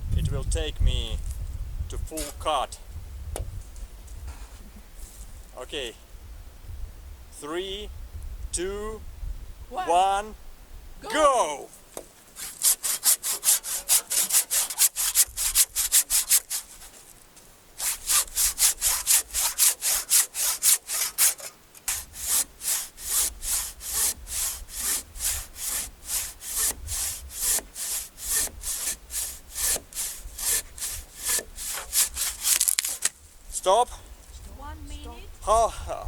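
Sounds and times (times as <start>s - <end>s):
handsaw cutting through log: 12.4s - 17.0s, 17.8s - 33.1s.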